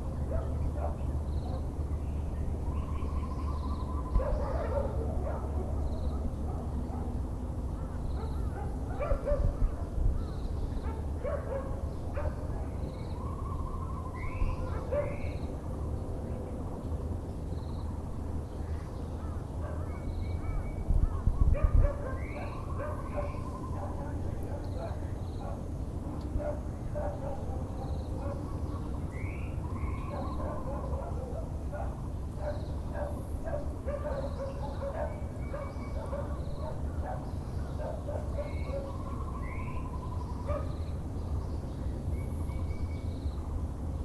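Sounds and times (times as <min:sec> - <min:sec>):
birds calling: 0:00.0 - 0:44.0
low city hum: 0:00.0 - 0:44.0
dogs barking: 0:00.2 - 0:01.8, 0:04.0 - 0:12.8, 0:14.5 - 0:15.4, 0:19.6 - 0:20.7, 0:21.5 - 0:25.7, 0:26.3 - 0:28.9, 0:29.8 - 0:40.8.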